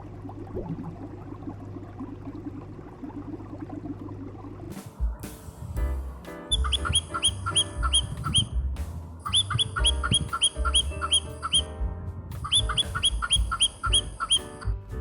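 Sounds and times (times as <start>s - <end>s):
background music with low beat: 4.7s - 15.0s
bird chirping: 6.5s - 8.6s, 9.3s - 11.7s, 12.4s - 14.7s.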